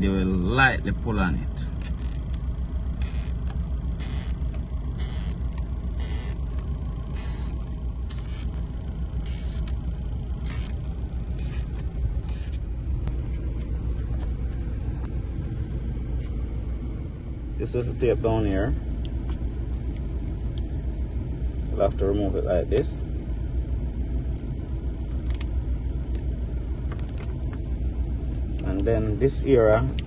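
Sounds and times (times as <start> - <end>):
low rumble: 0.0 - 30.0.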